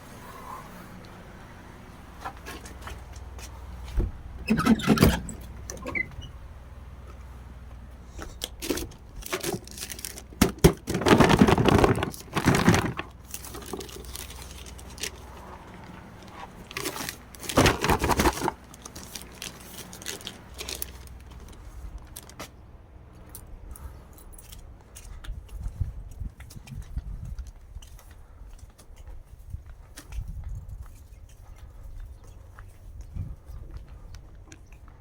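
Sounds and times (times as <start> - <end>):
packaging tearing and crinkling: 8.4 - 15.3, 16.2 - 22.4.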